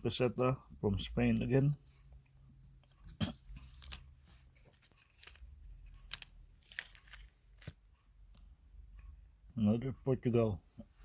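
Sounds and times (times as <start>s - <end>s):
packaging rustling: 6.0s - 7.8s.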